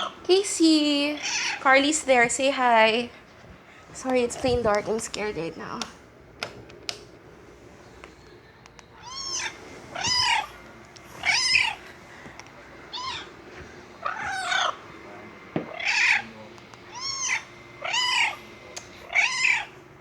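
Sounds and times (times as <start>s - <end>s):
cat meowing: 9.0s - 10.6s, 11.2s - 11.8s, 12.9s - 13.3s, 14.0s - 14.8s, 15.7s - 16.2s, 16.9s - 18.4s, 19.0s - 19.7s.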